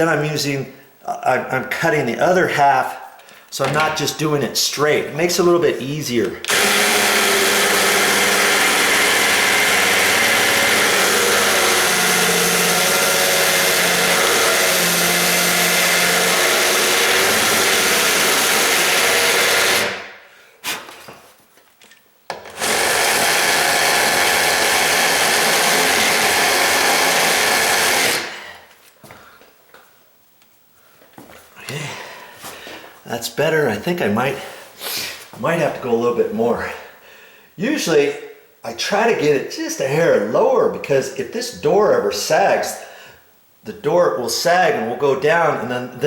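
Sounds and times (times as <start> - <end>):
power tool grinding steel: 6.5 - 20.0, 22.5 - 28.4.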